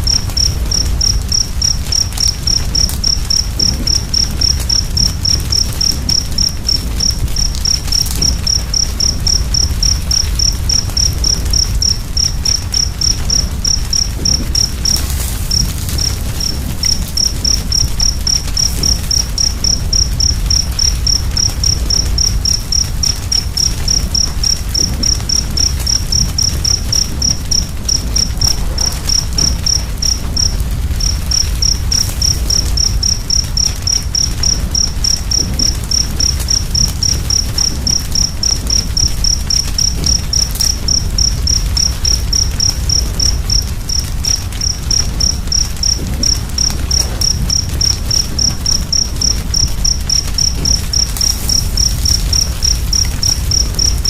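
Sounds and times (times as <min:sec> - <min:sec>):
low steady rumble: 0:00.0 - 0:39.4
cricket chirping: 0:00.0 - 0:54.0
wood fire crackling: 0:00.0 - 0:54.0.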